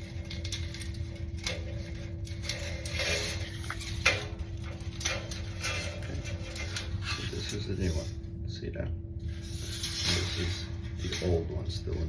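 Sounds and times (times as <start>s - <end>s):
metal clicks and scraping: 0.0s - 7.9s
steady low hum: 0.0s - 12.0s.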